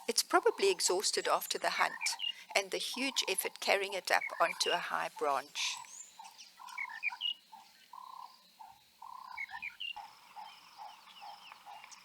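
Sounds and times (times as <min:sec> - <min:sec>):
high rising bird chirps: 0:05.4 - 0:12.0.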